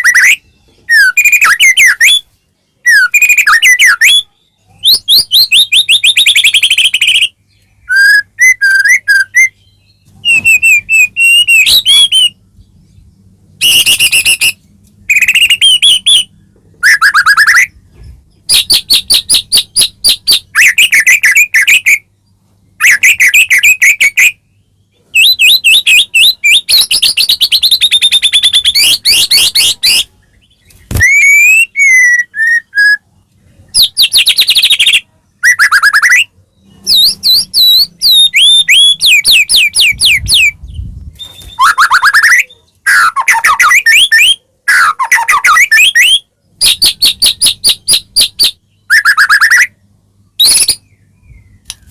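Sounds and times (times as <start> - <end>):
bird singing fast repeated notes: 0.0 - 12.6, 13.2 - 17.8, 18.4 - 33.0, 33.7 - 51.6
sharp click: 51.6 - 51.9.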